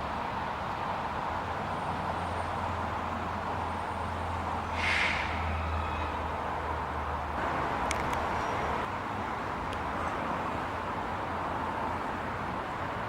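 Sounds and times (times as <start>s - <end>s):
short hiss: 4.7s - 5.4s.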